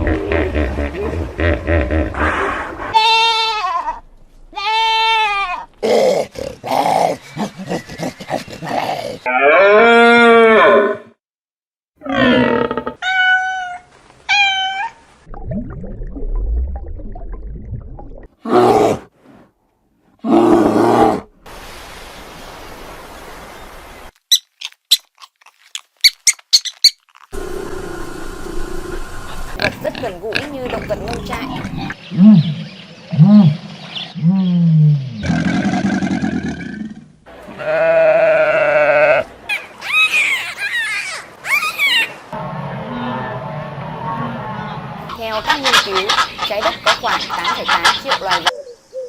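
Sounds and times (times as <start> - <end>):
long wavering bleat: 37.5 - 39.3
animal calls: 44.2 - 49.0.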